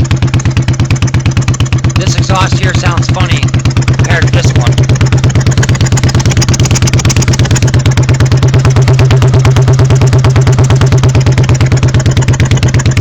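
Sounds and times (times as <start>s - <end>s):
motorcycle engine idling: 0.0s - 13.0s
man talking: 2.0s - 4.8s.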